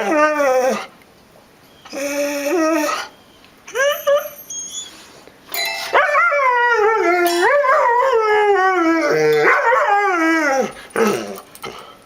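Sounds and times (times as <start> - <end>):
dog howling: 6.0 - 11.4.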